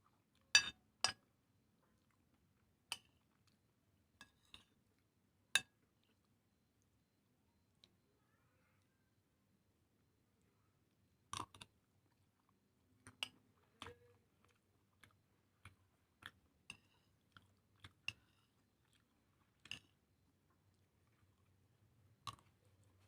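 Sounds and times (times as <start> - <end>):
person chewing and crunching food: 11.3 - 23.0.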